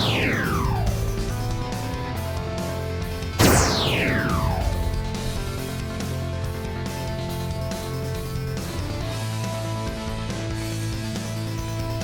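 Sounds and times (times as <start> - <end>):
guitar: 0.0 - 12.0
steady low bass: 3.4 - 7.9.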